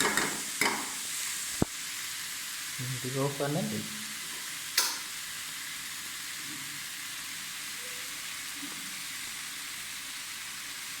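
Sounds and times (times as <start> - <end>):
vegetables sizzling in hot oil: 0.0 - 11.0.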